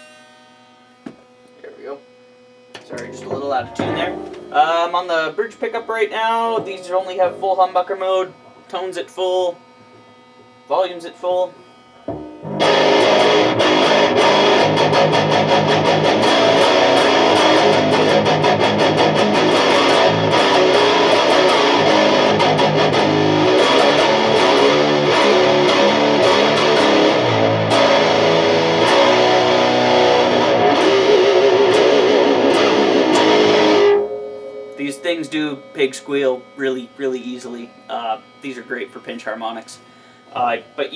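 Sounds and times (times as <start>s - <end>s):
distorted electric guitar riffing: 2.8s - 40.9s.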